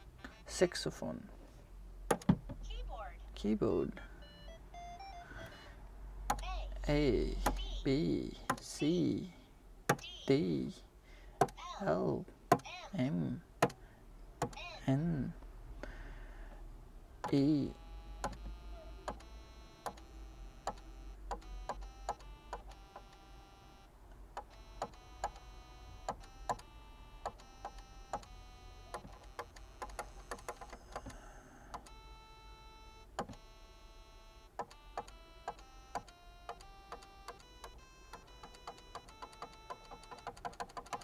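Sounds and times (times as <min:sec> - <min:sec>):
stylus tapping page: 0:02.1 - 0:02.5, 0:07.4 - 0:07.7
toy electronic musical notes: 0:04.2 - 0:05.6, 0:06.3 - 0:08.6, 0:17.3 - 0:41.0.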